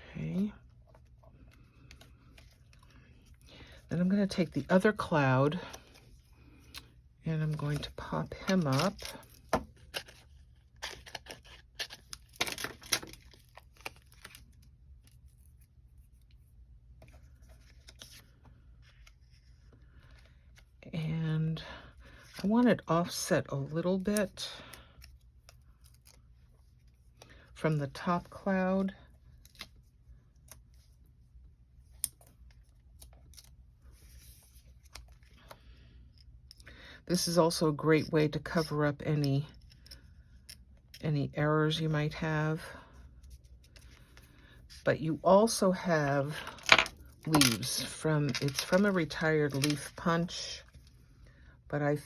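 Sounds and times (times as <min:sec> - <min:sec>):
soft paper rustle: 0:07.7 - 0:20.8, 0:45.8 - 0:51.2
paper clicks and rustles: 0:46.6 - 0:50.1.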